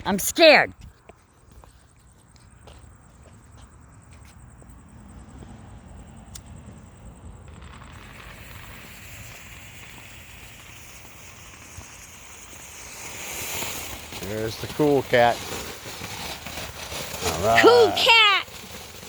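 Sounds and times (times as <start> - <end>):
firework fountain hissing: 0.0 - 0.6, 4.9 - 19.0.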